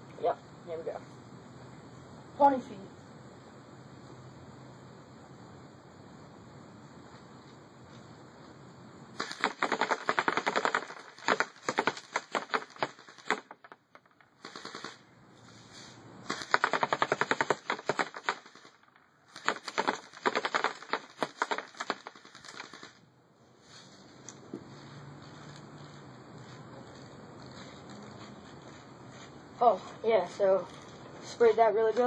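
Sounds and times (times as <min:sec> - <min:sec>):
airsoft rifle rapid fire: 0:09.2 - 0:13.8, 0:14.4 - 0:15.1, 0:16.2 - 0:23.0.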